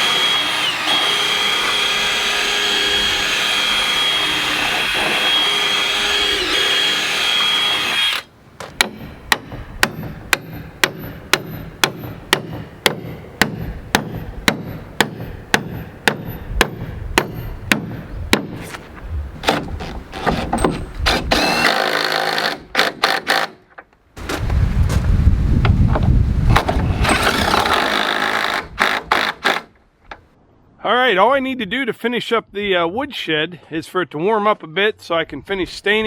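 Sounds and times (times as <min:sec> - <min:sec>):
power drill whining: 0:00.0 - 0:08.3, 0:20.1 - 0:23.5, 0:26.8 - 0:29.6.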